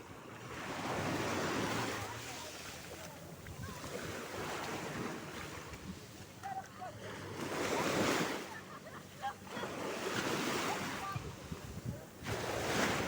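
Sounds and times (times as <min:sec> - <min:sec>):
sea waves washing ashore: 0:00.0 - 0:13.0
wind on microphone: 0:10.7 - 0:13.0.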